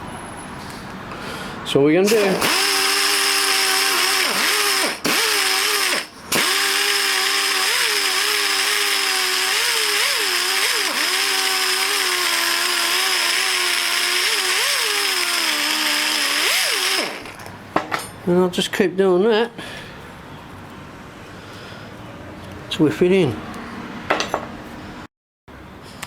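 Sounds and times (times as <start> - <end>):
die grinder grinding metal: 2.1 - 17.5.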